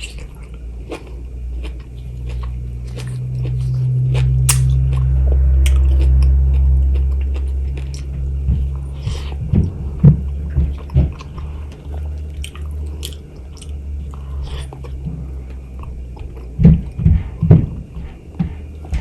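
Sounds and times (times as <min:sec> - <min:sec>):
chewing and biting mango: 0:00.0 - 0:09.8, 0:10.7 - 0:15.0
steady low hum: 0:00.0 - 0:19.0.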